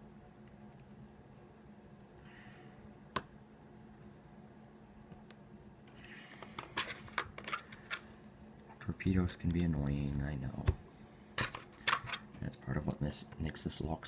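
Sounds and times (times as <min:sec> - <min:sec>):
lock picks clicking and scraping: 0:05.9 - 0:08.1.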